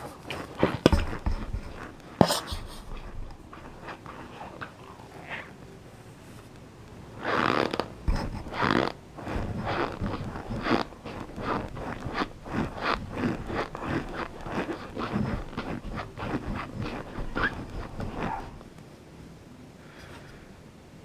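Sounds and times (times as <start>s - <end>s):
crunchy biting and chewing: 7.2s - 18.7s.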